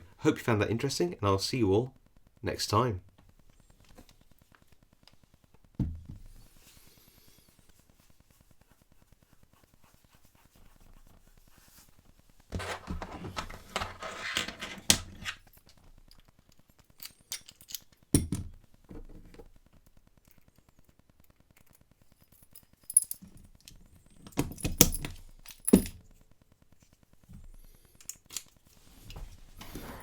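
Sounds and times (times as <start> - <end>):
small tools being handled: 12.5 - 18.4, 21.6 - 26.0
padlock clicking and rattling: 23.0 - 26.0.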